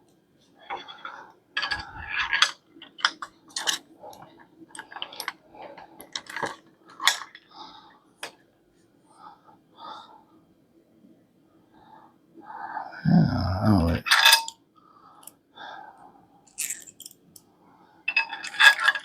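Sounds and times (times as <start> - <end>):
metal parts clinking and knocking: 0.7 - 5.4, 16.6 - 17.2, 18.1 - 19.0.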